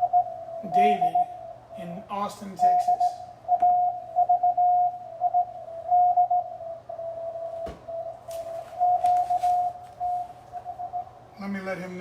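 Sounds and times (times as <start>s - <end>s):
morse code tone: 0.0s - 11.2s
radio crackles: 7.6s - 11.0s.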